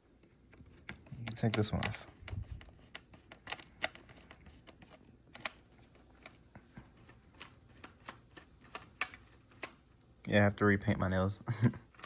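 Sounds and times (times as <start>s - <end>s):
plastic parts clicking: 0.5s - 6.4s.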